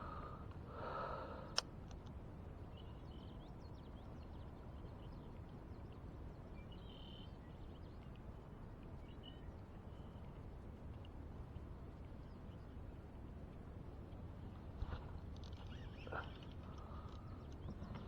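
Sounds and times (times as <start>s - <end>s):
birds chirping: 14.9s - 18.0s.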